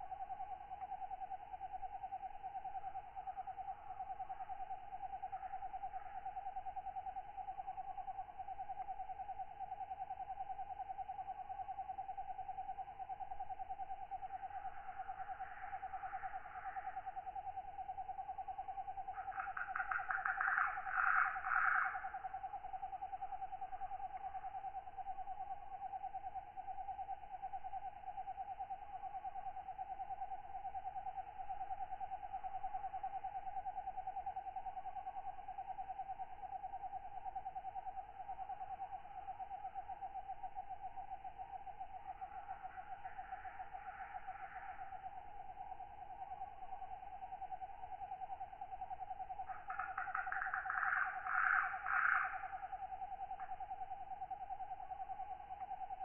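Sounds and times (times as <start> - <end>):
insects trilling: 0.0 - 56.0
katydid rasping call: 19.2 - 22.2, 49.4 - 52.8.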